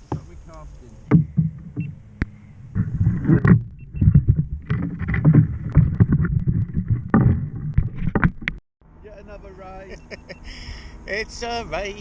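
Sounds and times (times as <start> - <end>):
water splashing against hull: 0.0 - 8.6.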